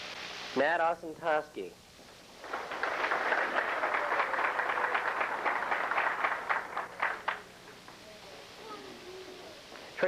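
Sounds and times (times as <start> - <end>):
audience applauding: 2.4 - 7.6.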